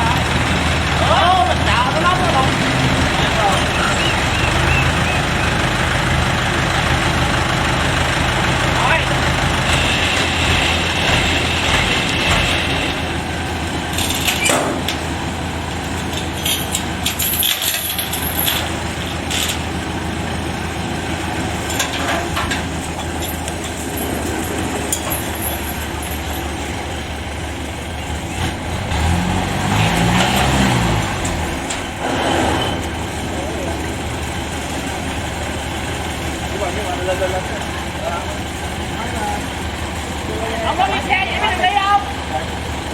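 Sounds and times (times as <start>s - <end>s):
diesel engine running: 0.0s - 42.9s
machine knocks and rattles: 13.8s - 19.8s.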